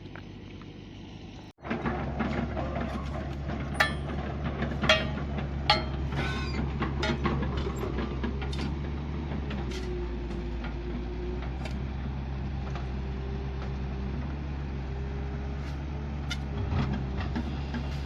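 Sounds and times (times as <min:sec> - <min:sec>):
engine running: 0:00.0 - 0:18.0
metallic clanks and knocks: 0:01.6 - 0:11.8.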